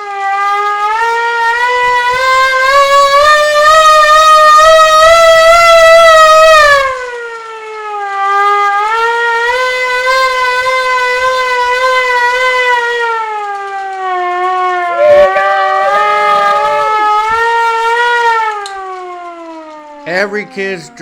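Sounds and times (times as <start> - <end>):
hand-cranked siren wailing: 2.8 - 6.8, 13.5 - 20.3.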